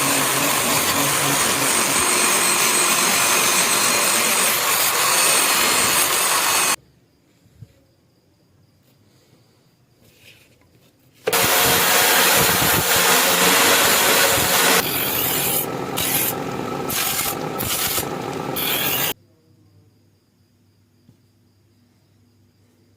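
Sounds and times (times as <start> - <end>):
abrasive grinding knife blade: 0.0 - 6.8, 11.3 - 19.2.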